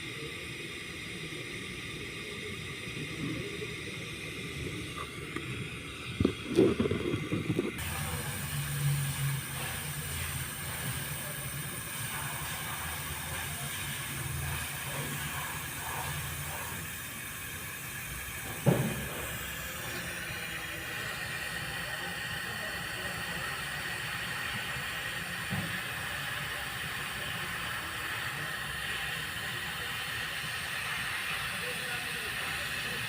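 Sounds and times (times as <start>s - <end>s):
engine misfiring: 4.5s - 16.8s
sharp thump: 18.5s - 19.3s.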